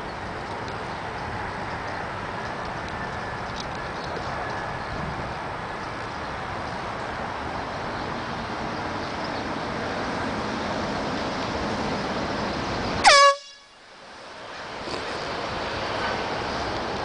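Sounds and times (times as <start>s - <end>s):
air horn blast: 13.0s - 13.8s.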